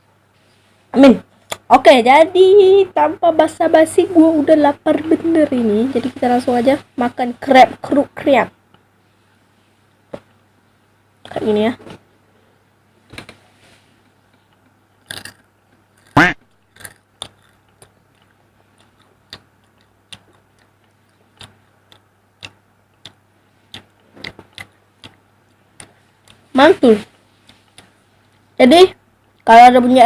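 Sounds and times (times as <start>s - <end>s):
steady low hum: 0.0s - 30.0s
crunchy chewing: 14.5s - 26.4s.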